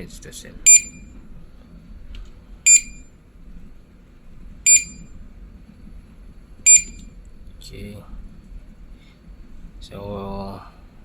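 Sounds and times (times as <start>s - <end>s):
short high alarm beeps: 0.7s - 1.0s, 2.7s - 3.0s, 4.7s - 5.0s, 6.7s - 7.0s.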